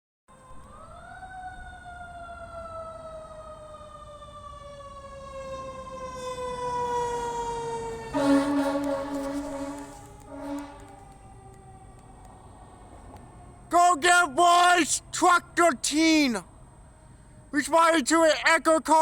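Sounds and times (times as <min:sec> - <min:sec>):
fire truck siren: 0:00.3 - 0:19.0
loud air horn blast: 0:08.1 - 0:11.0.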